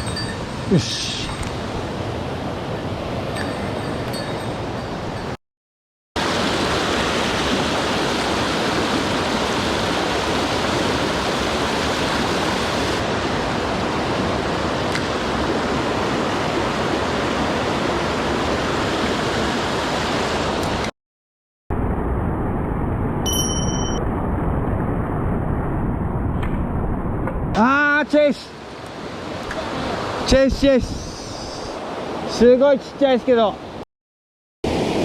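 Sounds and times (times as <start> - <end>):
water rushing over rocks: 6.2 - 20.9.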